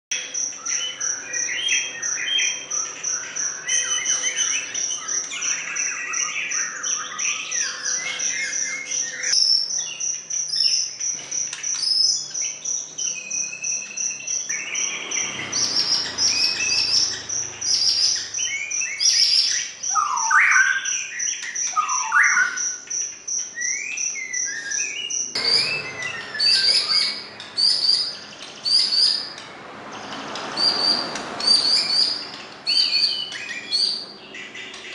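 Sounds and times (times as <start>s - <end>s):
bird singing whistled phrases: 15.7s - 29.4s.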